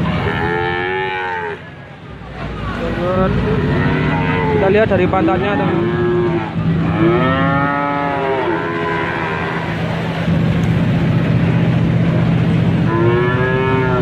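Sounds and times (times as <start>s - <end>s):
steady low hum: 1.6s - 14.0s
calves mooing: 3.4s - 4.9s, 5.6s - 9.8s, 12.8s - 14.0s.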